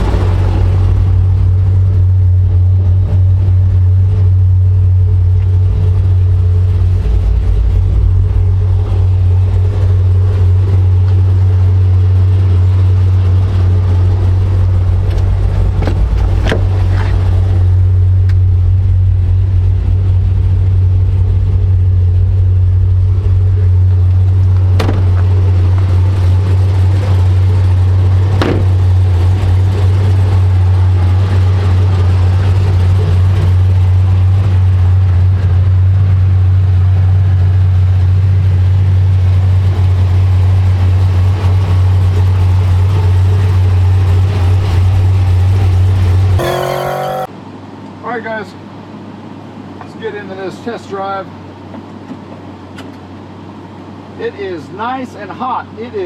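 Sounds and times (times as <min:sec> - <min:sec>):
car engine idling: 0:00.0 - 0:35.0.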